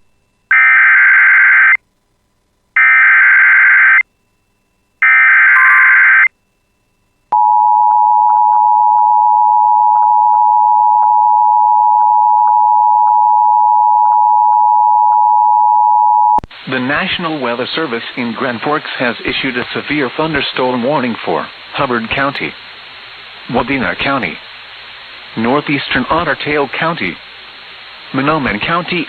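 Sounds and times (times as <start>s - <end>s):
two-tone attention signal: 5.0s - 6.3s.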